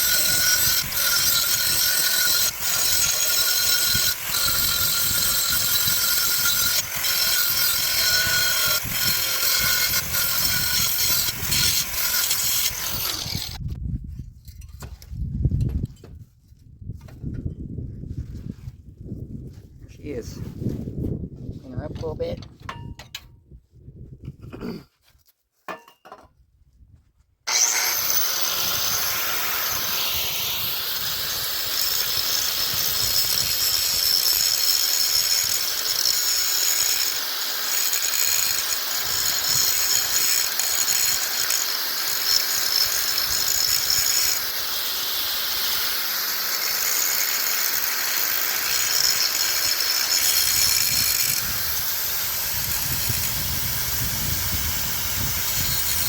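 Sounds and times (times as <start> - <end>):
angle grinder cutting metal pipe: 0.0 - 13.6, 27.5 - 56.0.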